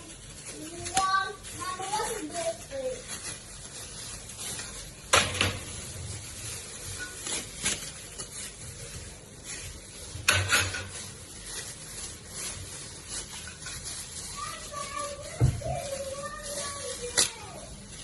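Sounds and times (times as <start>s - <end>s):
grill parts knocking and clattering: 10.2s - 11.2s.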